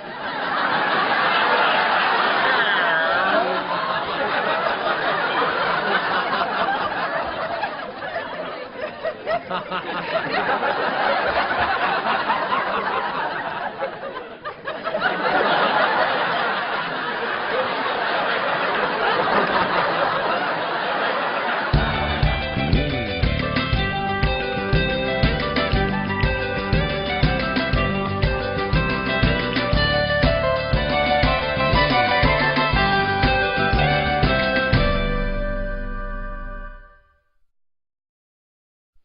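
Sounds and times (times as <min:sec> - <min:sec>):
studio audience laughing: 0:00.0 - 0:23.8, 0:25.4 - 0:34.2.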